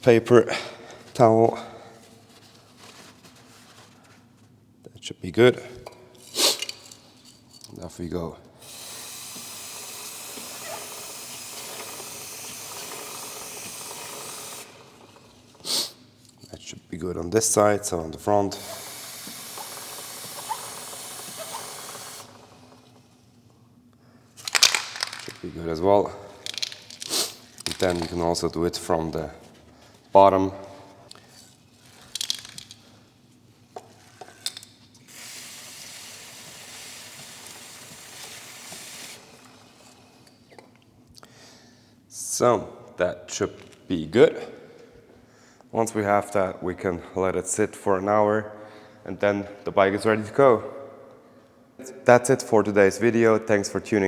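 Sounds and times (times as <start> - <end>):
aerosol spray hissing: 8.6 - 16.0, 18.3 - 22.9, 35.1 - 40.2.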